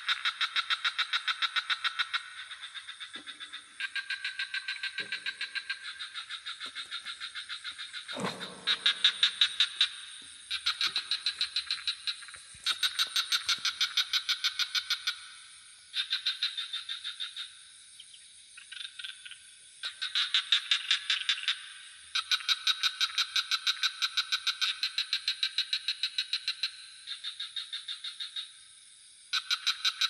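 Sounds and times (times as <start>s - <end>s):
frogs calling in pulsed trills: 0.0s - 30.0s.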